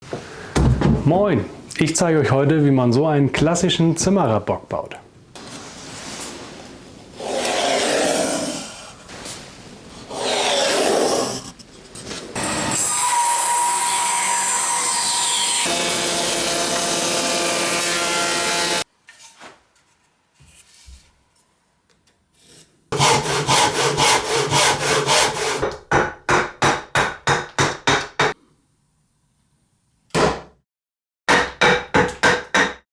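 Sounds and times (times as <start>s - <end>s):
handsaw cutting timber: 7.2s - 8.7s, 10.1s - 11.4s, 23.0s - 25.6s.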